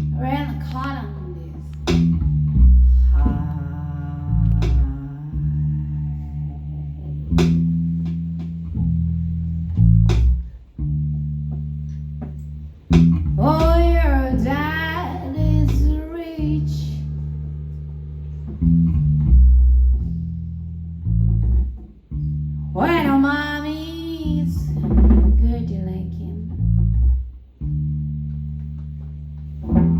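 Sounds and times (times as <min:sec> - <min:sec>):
person singing with vibrato: 0:03.0 - 0:06.8.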